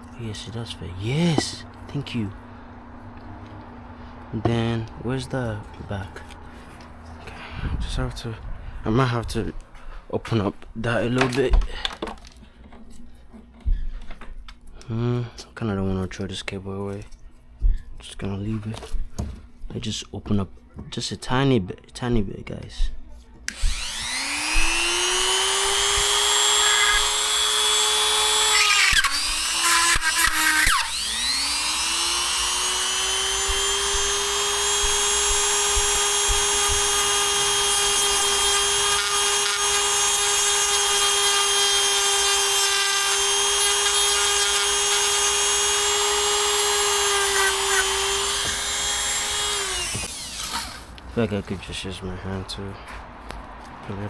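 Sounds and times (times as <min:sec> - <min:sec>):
electric drill spinning: 0:23.5 - 0:51.0.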